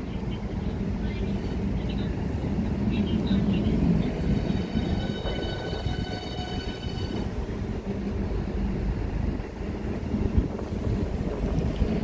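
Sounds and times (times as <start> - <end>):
train low rumble: 0.0 - 12.0.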